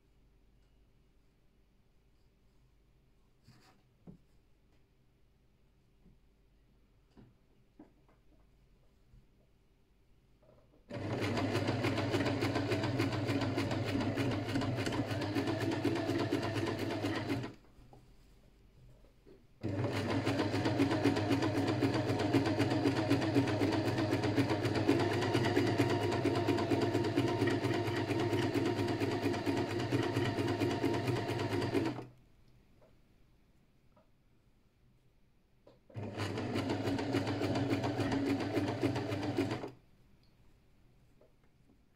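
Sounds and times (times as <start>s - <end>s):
electric sewing machine stitching: 10.9s - 17.6s, 19.6s - 32.0s, 36.0s - 39.8s.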